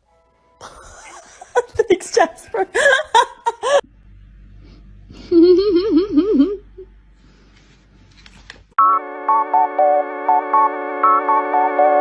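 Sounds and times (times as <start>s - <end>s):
electronic synthesizer music: 8.8s - 12.0s.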